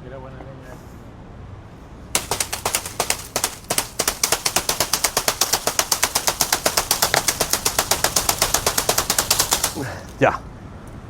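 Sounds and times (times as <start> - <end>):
rapid sharp clicking: 2.2 - 10.2.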